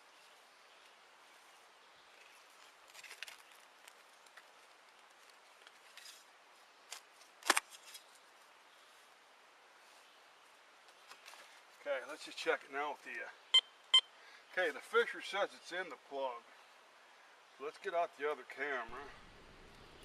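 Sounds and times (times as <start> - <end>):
crunching scrapes and clicks: 2.2 - 6.3.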